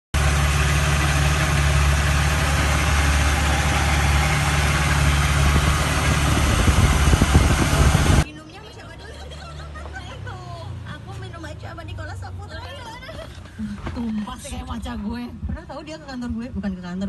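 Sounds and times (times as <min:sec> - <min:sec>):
car engine idling: 0:00.2 - 0:08.2
low engine thumps: 0:00.2 - 0:08.2.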